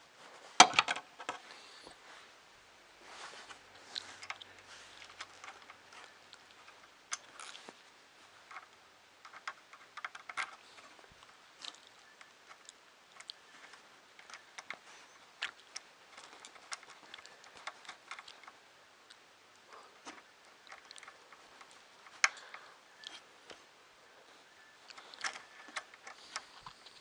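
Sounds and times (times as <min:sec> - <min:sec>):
plastic parts clicking together: 0:00.6 - 0:01.4, 0:08.4 - 0:23.6, 0:24.8 - 0:27.0.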